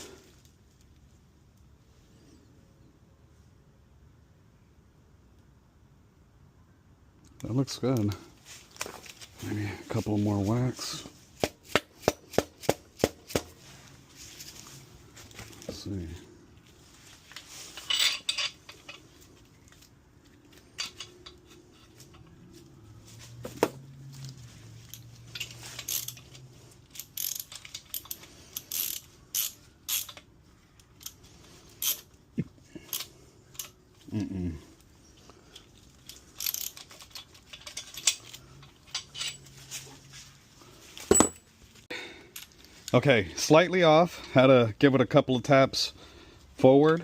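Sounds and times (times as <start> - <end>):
ratchet wrench clicking: 24.9 - 31.2, 31.8 - 32.1, 32.9 - 33.8, 36.0 - 39.4.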